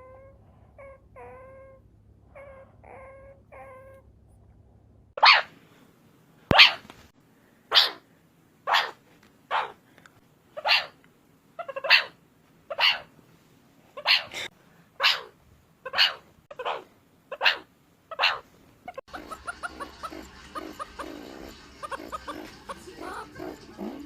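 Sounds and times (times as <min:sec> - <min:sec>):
harsh meerkat calls: 0:00.0 - 0:04.0, 0:05.2 - 0:05.5, 0:06.5 - 0:06.8, 0:07.7 - 0:08.0, 0:08.7 - 0:09.8, 0:10.6 - 0:11.0, 0:11.6 - 0:13.1, 0:14.0 - 0:24.0
meerkat chirping calls: 0:02.4 - 0:04.0, 0:05.2 - 0:05.5, 0:06.5 - 0:06.8, 0:07.7 - 0:08.0, 0:08.7 - 0:09.8, 0:10.6 - 0:11.0, 0:11.6 - 0:13.1, 0:14.0 - 0:24.0.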